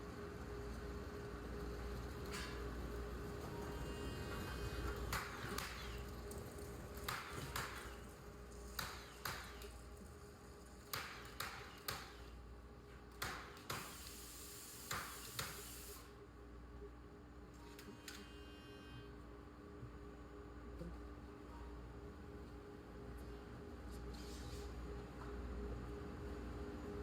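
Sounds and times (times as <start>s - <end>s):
nails hammered into wood: 8.8s - 9.6s, 10.9s - 12.2s, 13.2s - 14.0s.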